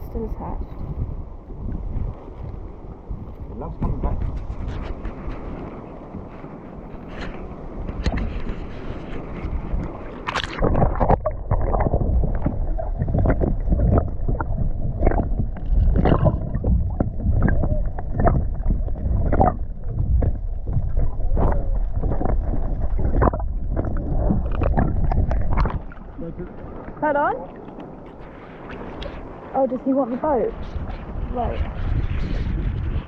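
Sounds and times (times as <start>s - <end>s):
wind rumble on microphone: 0.0s - 33.0s
paddle splashing in water: 4.4s - 29.6s.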